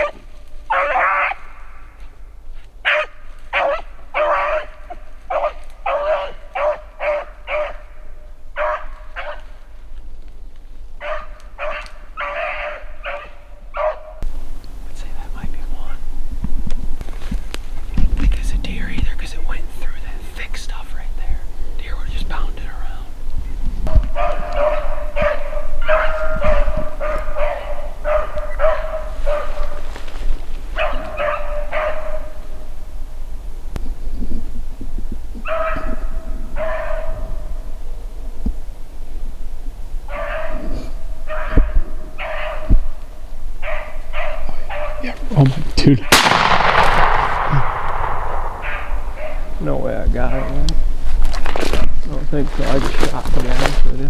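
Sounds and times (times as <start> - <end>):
puppy barking and baying: 0.0 - 1.5, 2.8 - 8.0, 8.6 - 9.5, 11.0 - 14.3, 23.9 - 29.8, 30.7 - 32.4, 35.4 - 37.5, 40.1 - 43.0, 43.6 - 45.4, 48.6 - 50.8.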